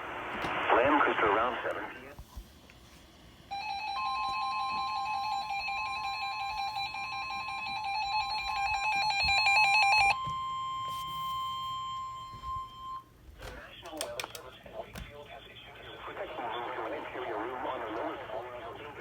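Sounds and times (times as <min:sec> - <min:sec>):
steady alarm tone: 0:03.5 - 0:13.2.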